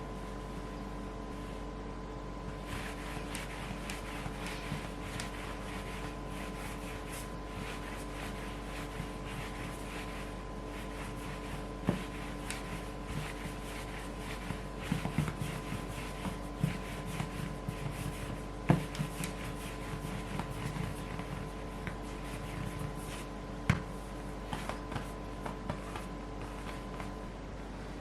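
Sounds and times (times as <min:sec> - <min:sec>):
faint steady hum: 0:00.0 - 0:28.0.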